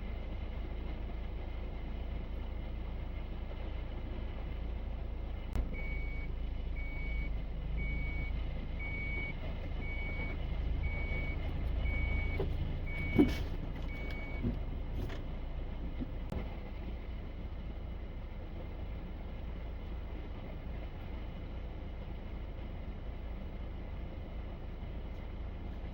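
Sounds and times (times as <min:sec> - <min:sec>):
low engine rumble: 0:00.0 - 0:25.9
reversing alarm beeping: 0:05.7 - 0:14.5.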